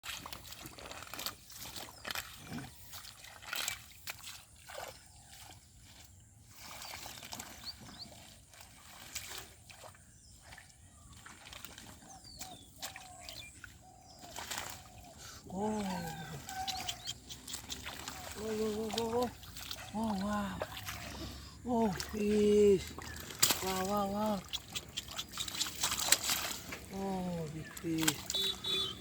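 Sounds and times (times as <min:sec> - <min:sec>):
river water sloshing and splashing: 0:00.0 - 0:29.0
faint bird chirps: 0:10.0 - 0:29.0.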